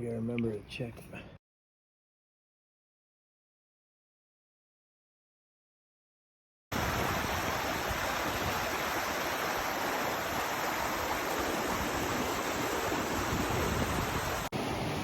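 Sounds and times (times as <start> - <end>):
small brook rushing: 6.7 - 15.0.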